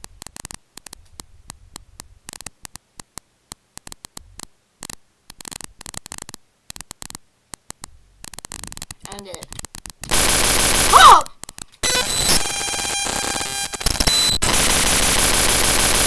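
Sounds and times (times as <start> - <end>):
static bursts: 0.0 - 16.0
sharp digital clicks: 4.8 - 16.0.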